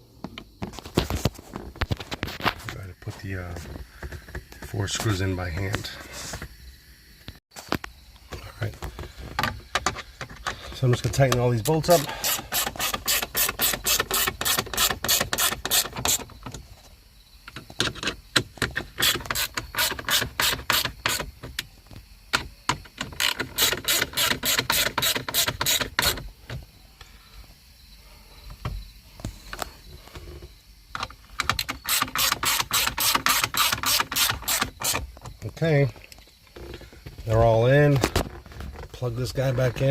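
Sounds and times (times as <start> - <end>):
hand ratchet clicking: 11.3 - 16.2, 23.0 - 26.2, 31.4 - 35.0.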